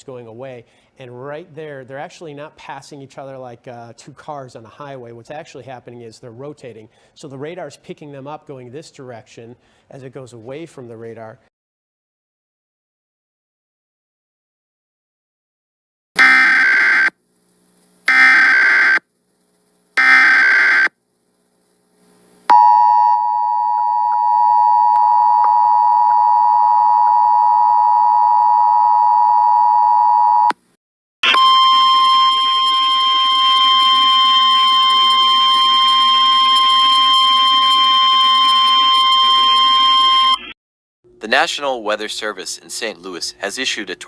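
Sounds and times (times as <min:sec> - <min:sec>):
harsh data bursts: 0:18.0 - 0:21.0
single steady tone: 0:22.5 - 0:30.6.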